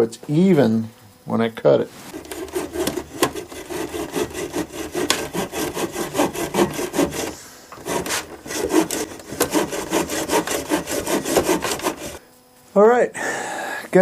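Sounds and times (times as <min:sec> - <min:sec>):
saw cutting through cork: 0:02.1 - 0:12.2.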